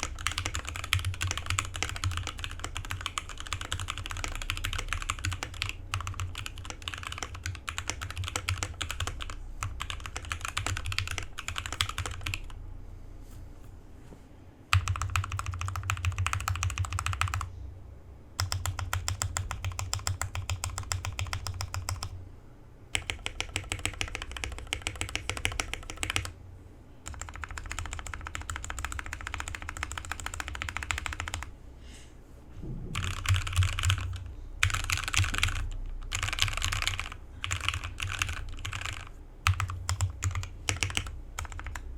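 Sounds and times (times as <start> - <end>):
fast mechanical keyboard typing: 0.0 - 12.6, 14.7 - 17.5, 18.4 - 22.2, 22.9 - 26.4, 27.0 - 31.5, 32.9 - 41.9.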